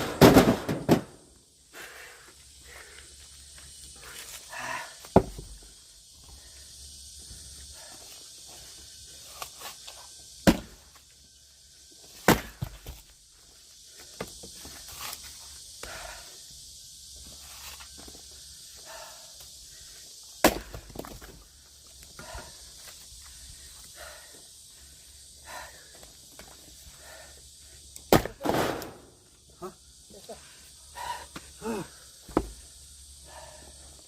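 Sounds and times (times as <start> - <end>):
axe splitting firewood: 10.4 - 10.8, 12.2 - 13.0, 20.4 - 21.3, 28.1 - 28.9.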